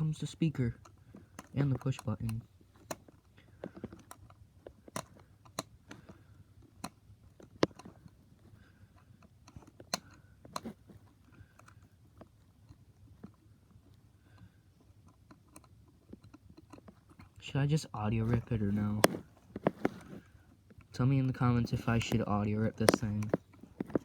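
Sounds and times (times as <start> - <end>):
plastic toy parts clicking: 0.0 - 13.4, 14.4 - 17.4, 21.6 - 24.0.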